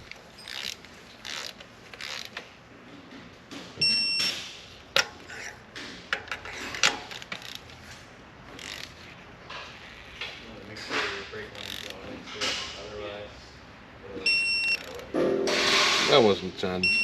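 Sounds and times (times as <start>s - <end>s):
ratchet clicks: 0.0s - 2.5s, 6.1s - 7.8s, 8.5s - 9.1s, 11.5s - 12.0s.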